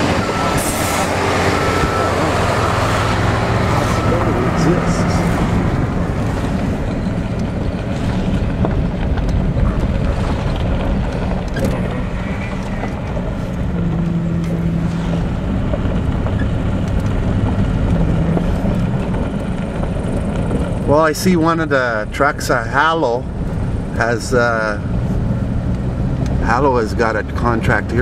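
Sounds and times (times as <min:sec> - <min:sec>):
wind rush: 0:00.0 - 0:20.9
engine and tyre drone: 0:00.0 - 0:28.0.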